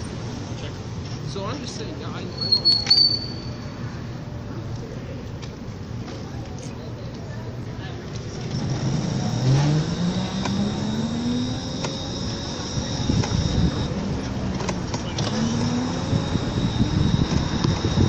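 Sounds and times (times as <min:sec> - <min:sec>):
vehicle engine speeding up: 0:08.4 - 0:14.6, 0:15.2 - 0:18.0
high whine: 0:08.5 - 0:14.2, 0:15.2 - 0:18.0.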